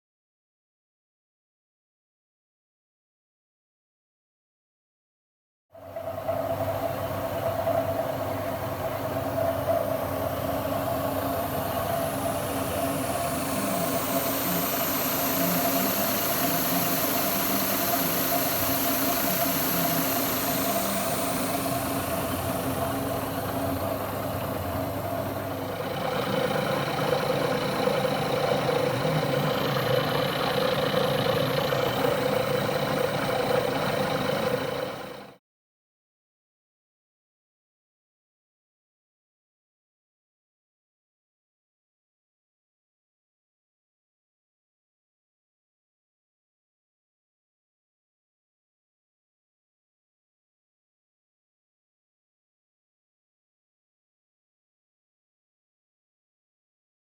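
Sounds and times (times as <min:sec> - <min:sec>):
machine tool humming: 0:11.3 - 0:35.4.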